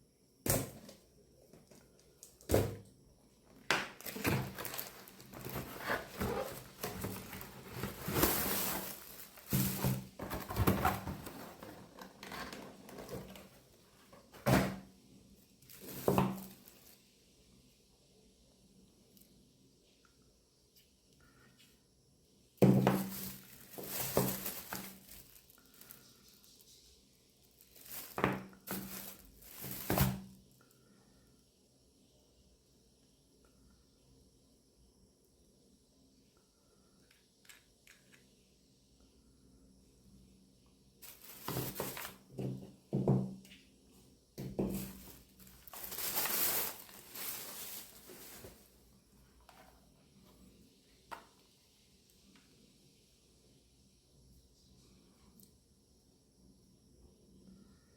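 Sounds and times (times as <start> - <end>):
packaging rustling and clattering: 3.6 - 14.9, 15.7 - 17.0, 22.6 - 26.0, 27.6 - 30.3, 41.0 - 42.7, 44.4 - 48.8
knocks and thuds of handling: 3.7 - 14.9, 22.6 - 24.9, 41.1 - 43.4, 44.4 - 48.6.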